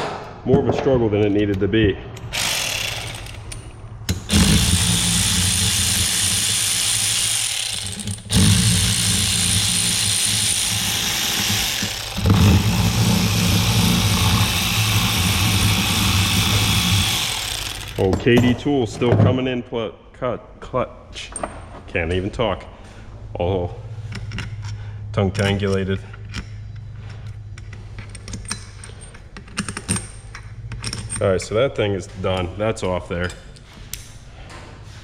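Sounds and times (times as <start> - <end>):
power tool hissing and humming: 2.3 - 3.3, 4.3 - 18.1.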